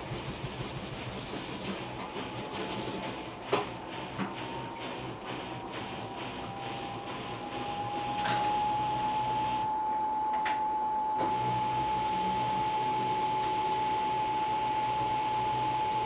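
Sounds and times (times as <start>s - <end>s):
washing machine motor whine: 0.0s - 16.0s.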